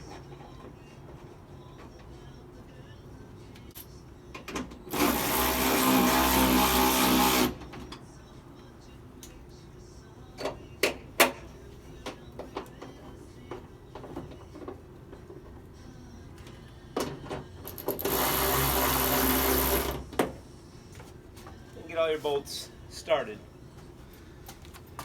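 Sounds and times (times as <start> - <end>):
power tool motor running: 4.9 - 7.6, 17.8 - 20.0.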